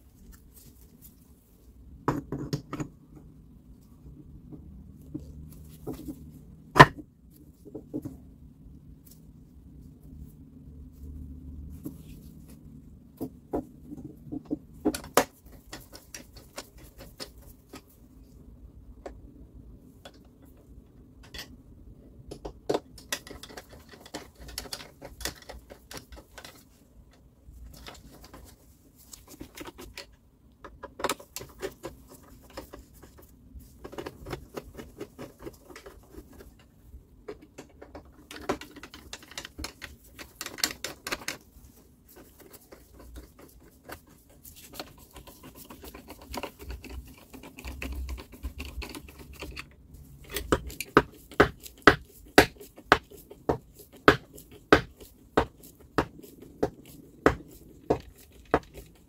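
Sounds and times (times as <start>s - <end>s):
irregular clicking and tapping: 22.2s - 41.5s, 42.1s - 59.0s.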